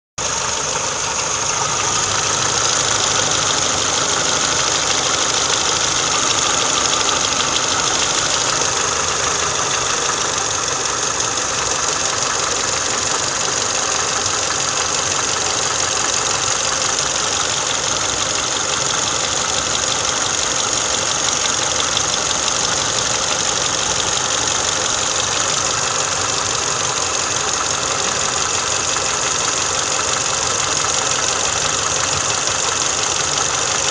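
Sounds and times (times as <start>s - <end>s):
car engine idling: 0.2s - 33.9s.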